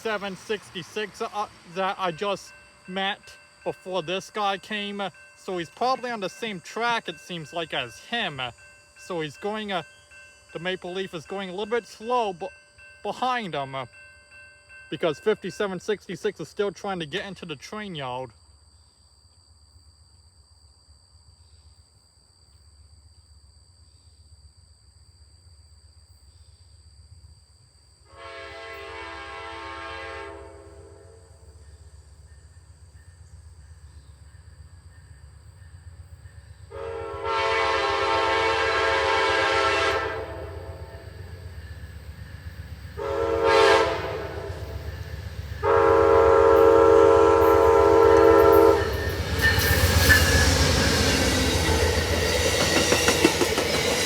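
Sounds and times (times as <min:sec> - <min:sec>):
train rumble: 0:00.0 - 0:18.1, 0:28.3 - 0:54.0
locomotive air horn blasts: 0:28.1 - 0:31.4, 0:36.7 - 0:41.1, 0:43.0 - 0:44.8, 0:45.6 - 0:51.9.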